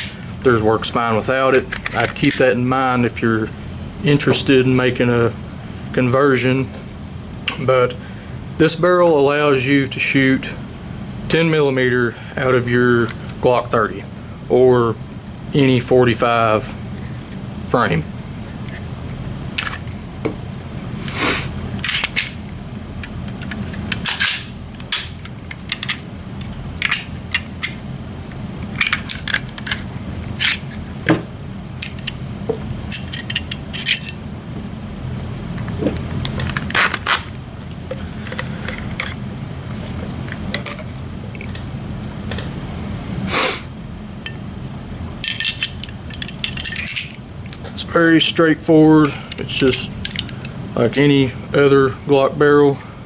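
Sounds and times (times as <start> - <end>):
metal pistol parts clicking: 23.0 - 26.1, 26.8 - 27.8, 32.9 - 34.2, 45.2 - 47.2, 49.2 - 51.1.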